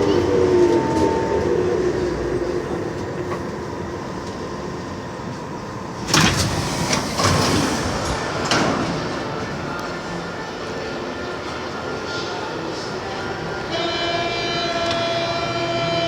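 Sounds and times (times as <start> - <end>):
train motor whine: 0.0 - 16.0
train running rumble: 0.0 - 16.0
sliding doors banging: 6.0 - 10.0.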